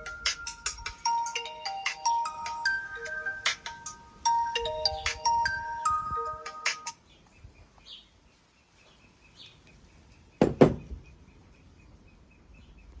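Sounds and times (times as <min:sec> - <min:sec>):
melodic alarm ringtone: 0:00.0 - 0:07.0
loud knocks: 0:10.4 - 0:11.0.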